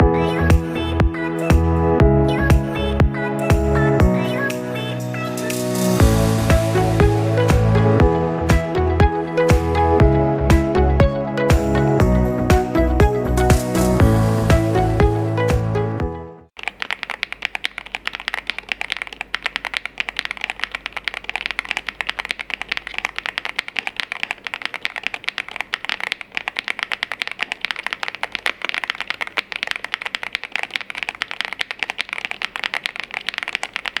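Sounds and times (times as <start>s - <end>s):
fast mechanical keyboard typing: 16.6s - 34.0s.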